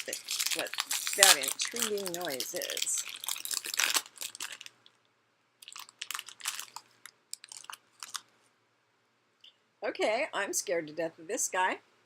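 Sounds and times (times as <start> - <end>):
packaging crinkling and crunching: 0.0 - 4.9, 5.6 - 8.3.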